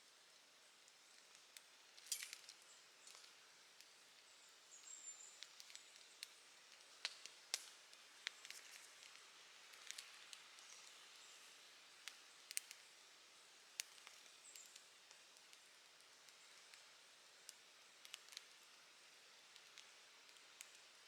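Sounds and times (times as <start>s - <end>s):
faint fire hiss: 0.0s - 21.0s
campfire crackling and popping: 4.8s - 11.0s, 12.0s - 12.9s, 13.6s - 18.7s, 19.5s - 21.0s.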